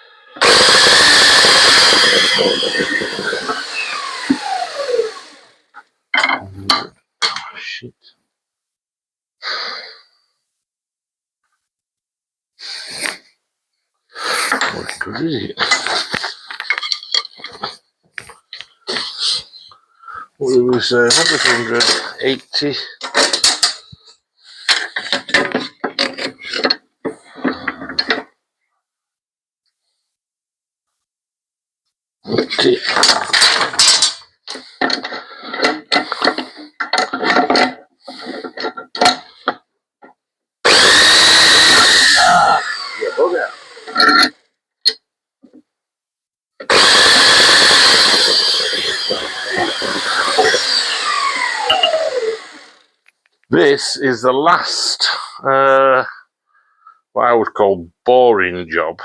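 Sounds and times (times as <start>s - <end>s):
electric saw cutting wood: 0.0s - 5.8s, 40.7s - 44.4s, 46.6s - 53.0s
tools and wood knocking on bench: 6.2s - 7.4s.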